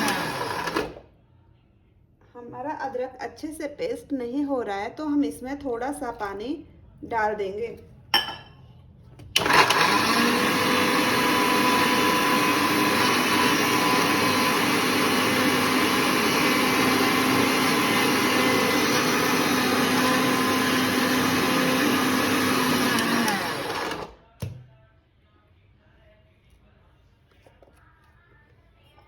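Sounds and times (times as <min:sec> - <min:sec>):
mixer grinder running: 0:00.0 - 0:01.1, 0:09.4 - 0:24.2.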